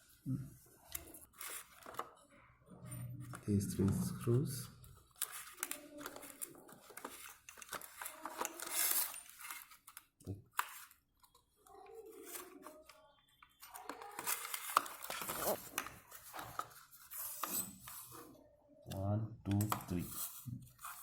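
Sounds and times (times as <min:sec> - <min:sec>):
plastic clicks scrapes and rattles: 0:04.8 - 0:18.3.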